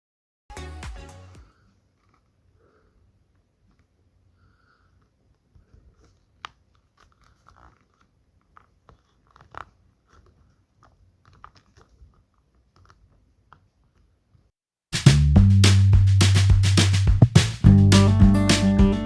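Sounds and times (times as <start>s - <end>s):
small clicks and crackles: 4.8s - 14.5s.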